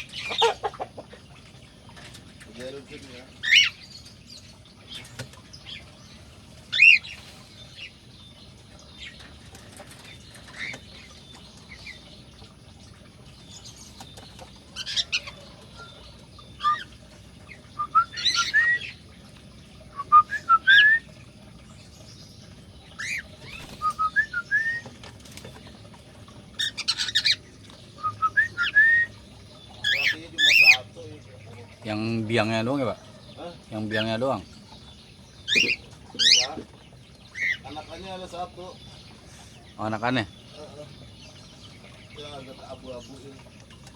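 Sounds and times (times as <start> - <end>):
cockatiel whistles and squawks: 20.0 - 21.0.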